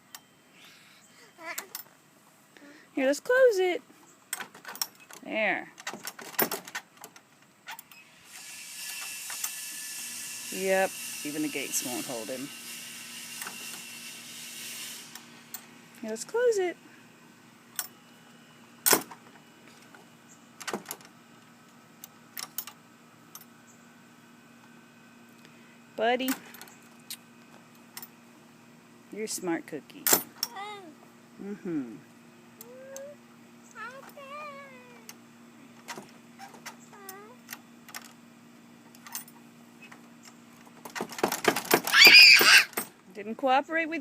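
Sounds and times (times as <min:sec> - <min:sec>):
dog whining: 0:36.4 - 0:37.4, 0:41.9 - 0:42.7.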